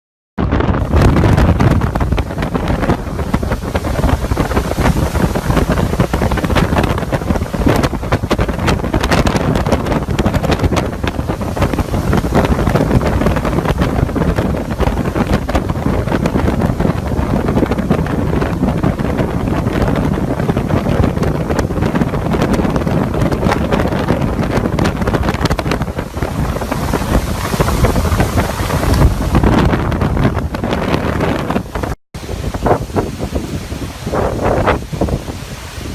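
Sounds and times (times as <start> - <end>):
strong wind buffeting microphone: 0.4 - 35.9.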